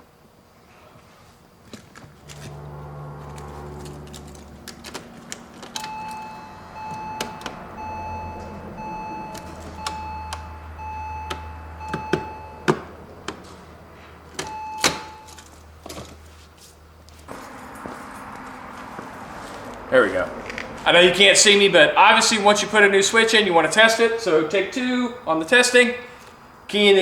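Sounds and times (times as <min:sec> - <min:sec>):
sharp clicks and knocks: 0:03.3 - 0:06.2
car warning chime beeping: 0:05.8 - 0:13.3, 0:14.4 - 0:15.4.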